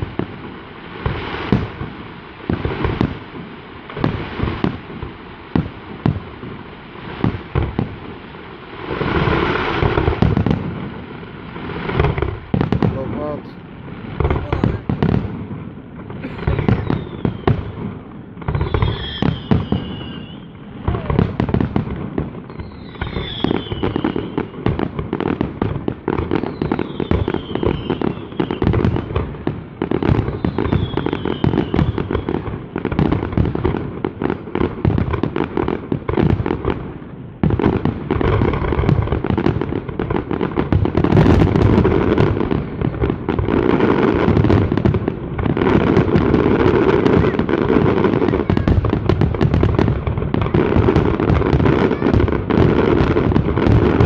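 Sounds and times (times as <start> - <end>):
fireworks crackle: 0.0 - 54.0
falling firework whistles: 16.2 - 17.8, 18.4 - 21.8, 22.4 - 24.8, 26.1 - 29.3, 30.0 - 32.4.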